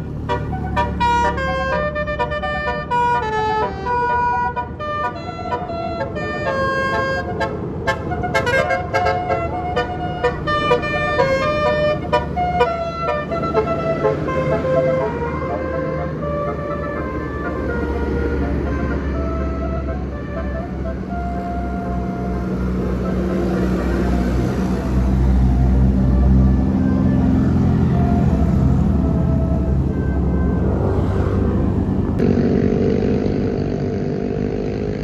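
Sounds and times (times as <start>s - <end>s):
bus melody horn playing a tune: 0.0s - 32.2s
bus engine running: 0.0s - 35.0s.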